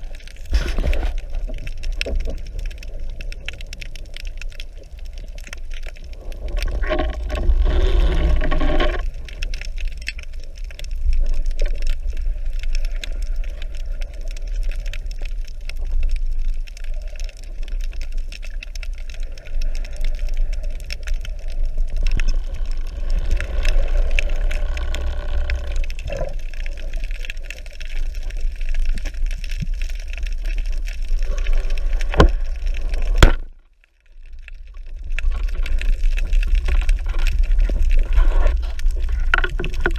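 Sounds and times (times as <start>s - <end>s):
underwater bubbling: 0.0s - 39.9s
underwater rumble: 0.0s - 39.9s.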